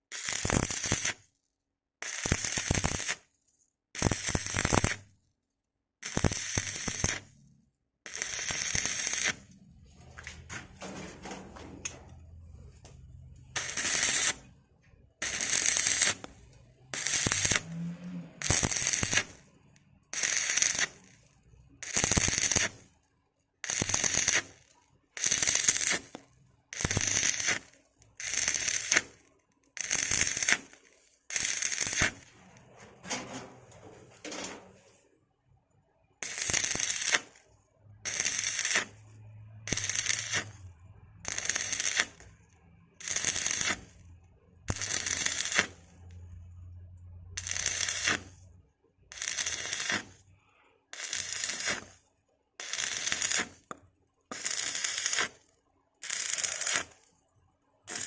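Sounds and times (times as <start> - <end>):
welding arc crackling: 0.1 - 1.2, 2.0 - 3.2, 4.0 - 5.0, 6.0 - 7.4, 8.1 - 14.5, 15.2 - 19.5, 20.2 - 21.2, 21.8 - 22.9, 23.6 - 24.6, 25.2 - 29.2, 29.8 - 35.0, 36.2 - 37.4, 38.0 - 39.0, 39.6 - 42.4, 43.0 - 44.0, 44.7 - 45.9, 47.3 - 48.4, 49.1 - 50.2, 51.0 - 52.0, 52.6 - 53.7, 54.3 - 55.4, 56.0 - 57.0.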